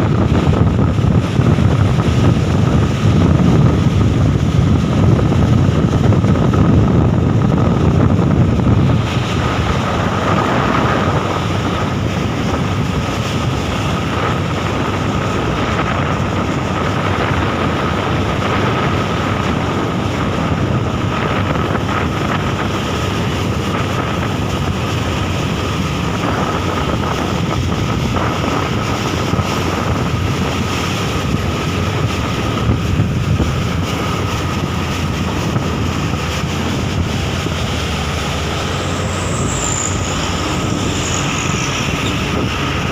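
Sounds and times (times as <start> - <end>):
road and engine rumble: 0.0 - 42.9
wind buffeting microphone: 0.0 - 42.9.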